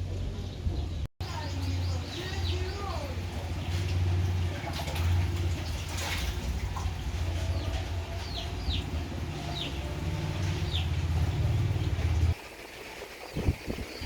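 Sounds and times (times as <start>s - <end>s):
low machine rumble: 0.0s - 12.4s
bird chirping: 7.2s - 14.0s.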